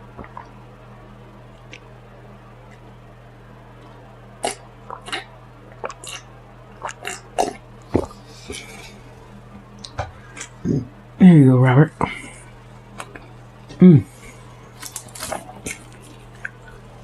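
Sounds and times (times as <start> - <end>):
low steady hum: 0.0 - 17.0
person chewing food: 3.8 - 9.2, 12.9 - 17.0.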